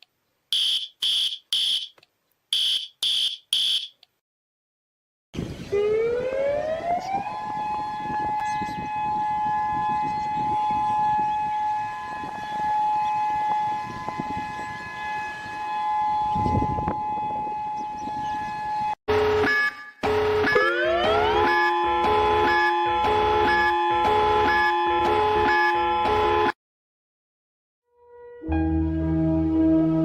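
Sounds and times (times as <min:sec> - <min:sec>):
siren wailing: 0:05.6 - 0:26.5.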